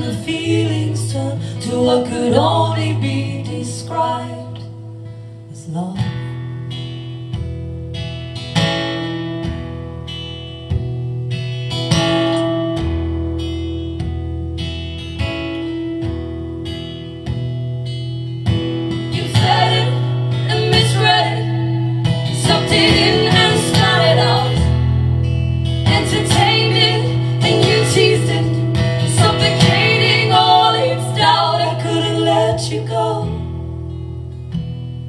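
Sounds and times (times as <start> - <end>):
woman singing: 0.0 - 4.7, 19.0 - 24.8, 25.8 - 33.5
acoustic guitar strumming: 6.1 - 35.0.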